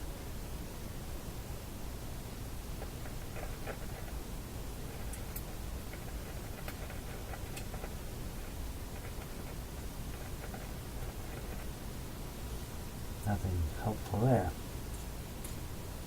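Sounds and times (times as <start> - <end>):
low hum and hiss: 0.0 - 16.0.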